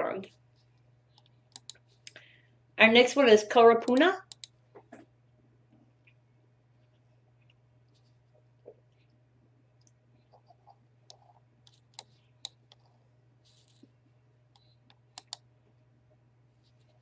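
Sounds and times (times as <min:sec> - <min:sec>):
low steady hum: 0:00.0 - 0:17.0
computer mouse clicks: 0:01.1 - 0:01.8, 0:03.9 - 0:04.6, 0:09.8 - 0:12.9, 0:14.5 - 0:15.5.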